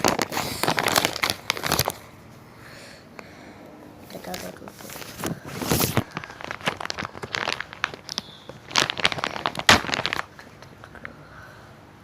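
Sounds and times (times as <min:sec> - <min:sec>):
plastic wrapping crinkling: 0:00.0 - 0:02.0, 0:04.1 - 0:10.6.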